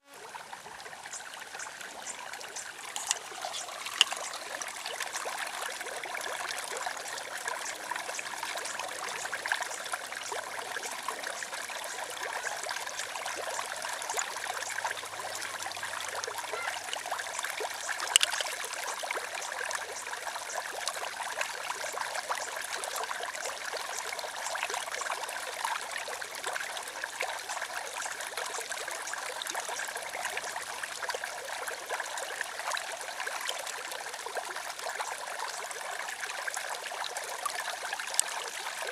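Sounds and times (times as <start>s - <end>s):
water trickling and splashing: 0.0s - 38.9s
sharp splashes or ticks: 2.9s - 4.6s, 18.0s - 18.6s.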